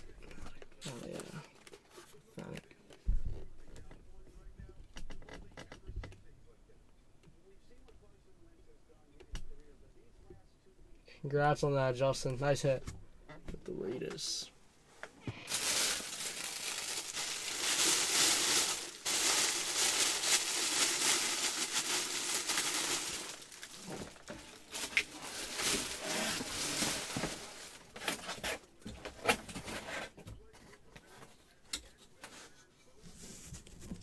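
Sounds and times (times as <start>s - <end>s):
packaging crinkling and tearing: 15.4s - 28.6s.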